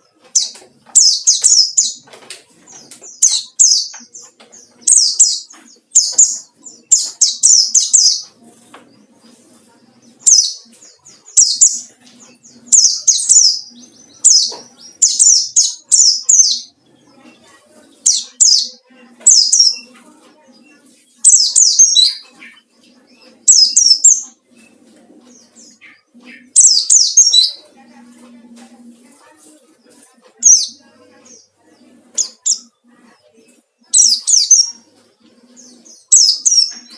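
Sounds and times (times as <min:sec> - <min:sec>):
bird singing high chirping phrases: 0:00.0 - 0:36.9.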